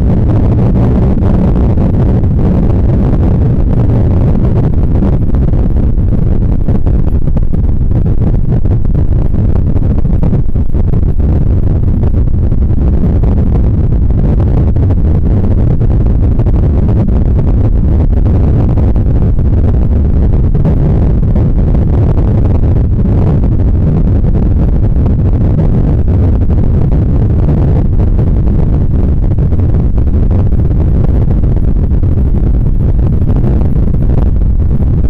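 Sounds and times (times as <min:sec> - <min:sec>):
loud low rumble: 0:00.0 - 0:35.0.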